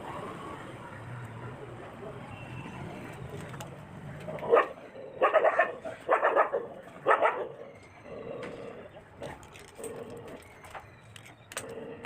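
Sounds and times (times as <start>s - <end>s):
dog barking: 4.4s - 7.6s.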